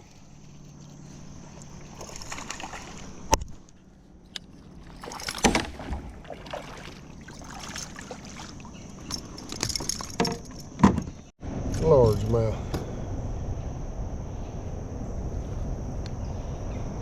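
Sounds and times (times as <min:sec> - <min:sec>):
water splashing and sloshing: 0:00.0 - 0:11.3.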